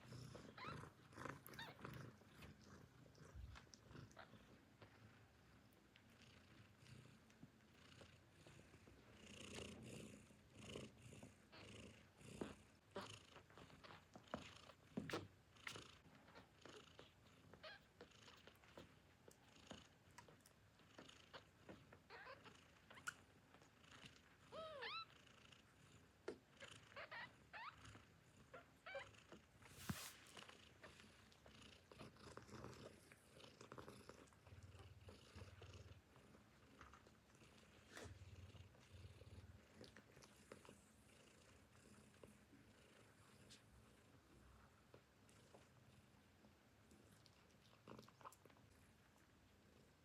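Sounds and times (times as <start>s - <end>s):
kittens purring: 0.0s - 50.0s.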